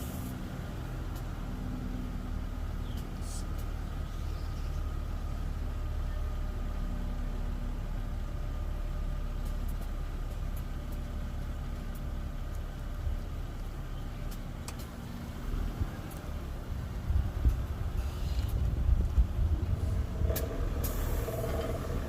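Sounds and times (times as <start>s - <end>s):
car engine idling: 0.0s - 22.0s.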